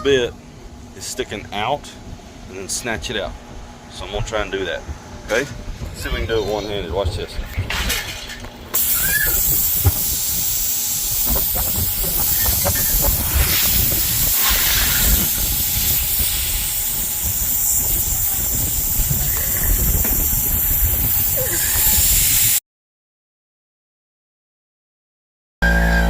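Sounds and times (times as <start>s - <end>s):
air hissing from tyre: 8.8s - 22.6s.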